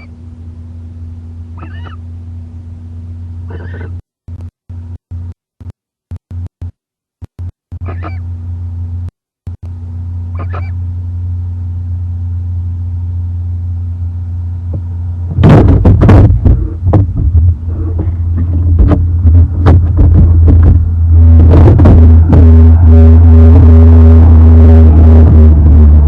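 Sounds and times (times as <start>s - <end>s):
electrical hum: 0.0s - 26.0s
owl call: 1.5s - 2.1s, 3.5s - 4.0s, 7.8s - 8.3s, 10.3s - 10.8s.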